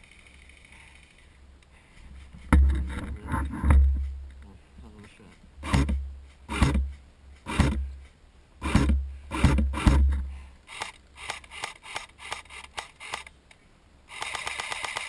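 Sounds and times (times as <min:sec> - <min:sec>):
gear rubbing against microphone: 0:00.0 - 0:04.2.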